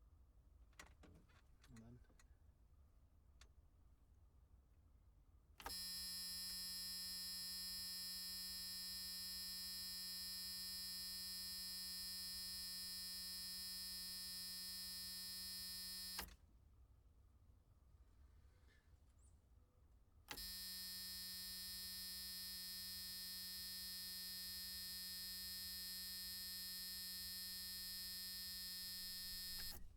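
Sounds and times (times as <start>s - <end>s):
steady electric buzz: 20.5s - 29.9s.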